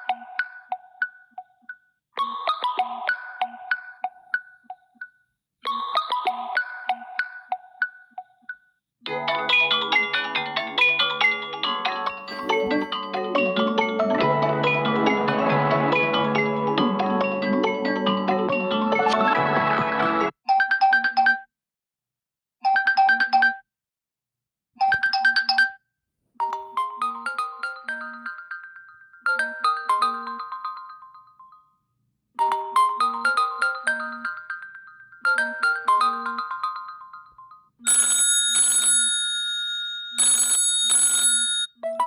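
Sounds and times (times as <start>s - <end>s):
phone ringtone chimes: 9.5s - 19.1s, 26.4s - 31.4s, 32.4s - 42.0s.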